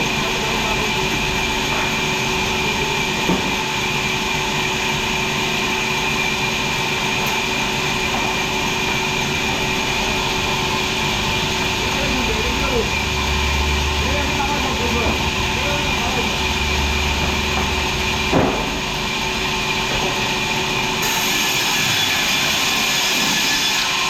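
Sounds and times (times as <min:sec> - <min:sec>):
sawmill machinery running: 0:00.0 - 0:24.0.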